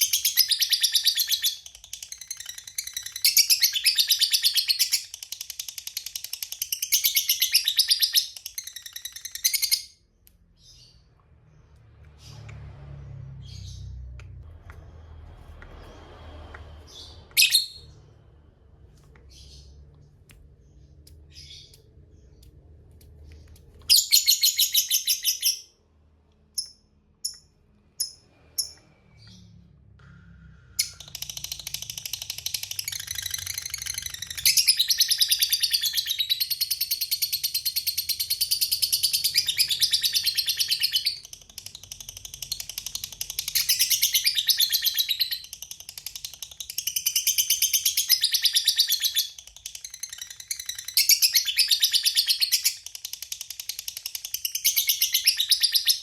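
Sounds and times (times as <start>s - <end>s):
sharp bird chirps: 0.0s - 12.7s, 16.9s - 18.2s, 19.2s - 56.0s.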